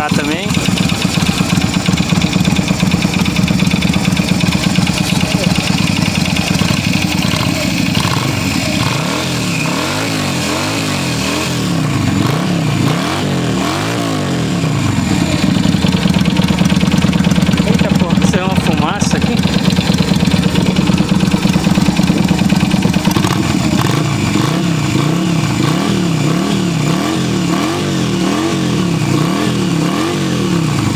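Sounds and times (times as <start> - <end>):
motorcycle engine idling and revving: 0.0 - 30.9.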